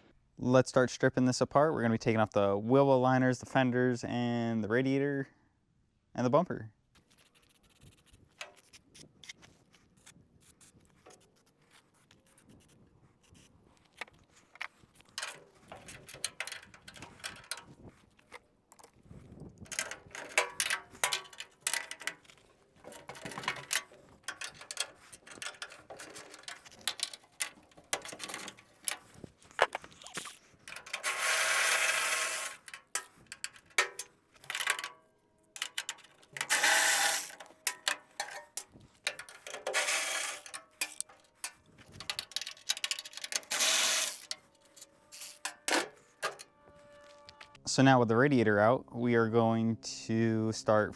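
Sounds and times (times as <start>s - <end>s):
tools clinking: 14.6s - 19.0s, 19.6s - 46.5s
ratchet wrench clicking: 15.2s - 17.7s, 19.7s - 22.3s, 22.9s - 34.9s, 35.6s - 46.4s.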